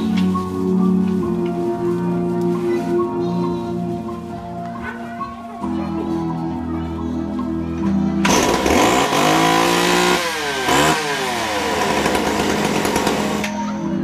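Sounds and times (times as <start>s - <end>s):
chainsaw revving: 8.2s - 13.6s.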